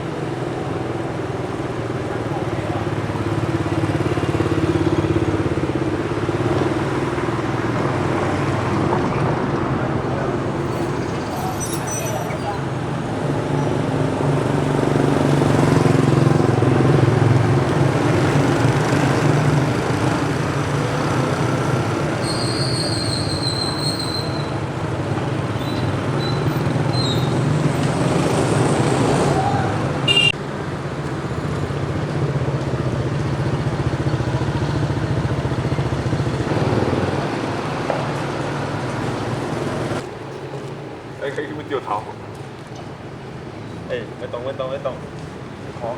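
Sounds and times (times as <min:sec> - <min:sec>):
vehicle engine humming: 0:00.0 - 0:45.9
high squeal: 0:10.6 - 0:12.6, 0:22.2 - 0:24.6, 0:25.6 - 0:27.4.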